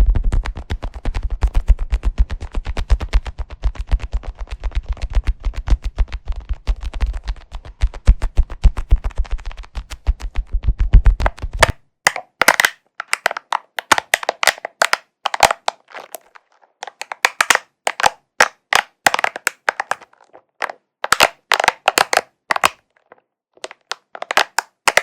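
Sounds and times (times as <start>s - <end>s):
fast tapping on leather cushion: 0.0s - 12.6s
spiky ball crackling clicks: 0.1s - 15.7s, 16.9s - 20.1s, 23.7s - 25.0s.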